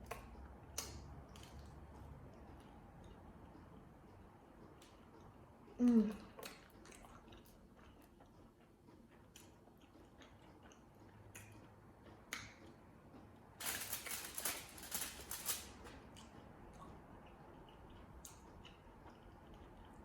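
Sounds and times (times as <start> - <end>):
soft chewing: 0.0 - 20.0
crackly crunching: 13.6 - 16.3.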